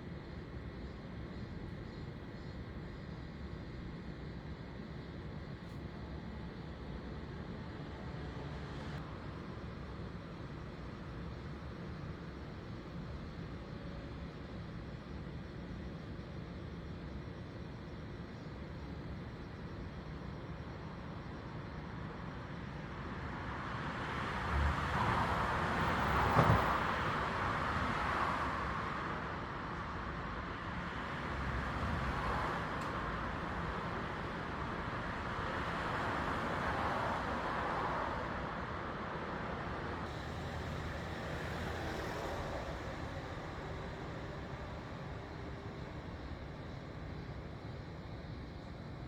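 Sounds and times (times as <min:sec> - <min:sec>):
road traffic passing: 0:07.2 - 0:09.0, 0:22.9 - 0:49.0.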